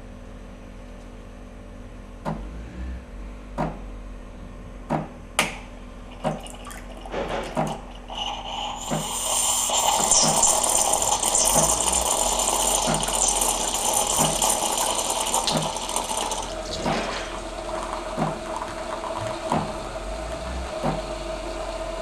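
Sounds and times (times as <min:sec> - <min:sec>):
pump knocking and humming: 0:03.6 - 0:03.8, 0:04.8 - 0:22.0
steam hissing: 0:06.9 - 0:22.0.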